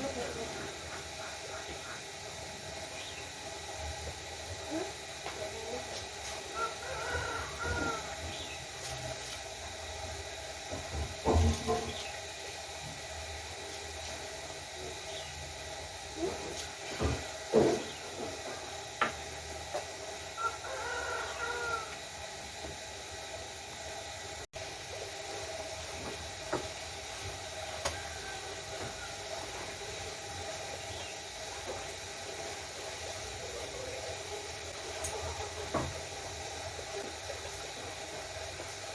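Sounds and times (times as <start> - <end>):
rooster crowing: 6.5 - 8.2, 20.4 - 22.1, 27.6 - 29.4.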